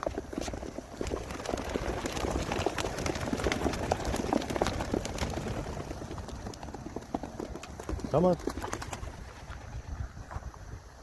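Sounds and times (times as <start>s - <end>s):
pigeon wingbeats fluttering: 0.0s - 11.0s.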